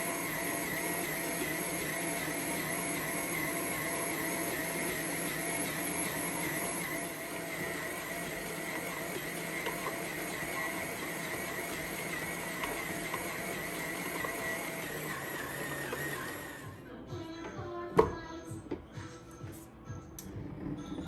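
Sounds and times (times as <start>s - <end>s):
electric mixer running: 0.0s - 16.8s.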